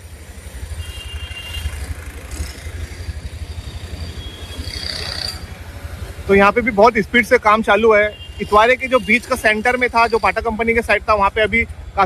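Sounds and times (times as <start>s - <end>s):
street traffic rumble: 0.0s - 12.0s.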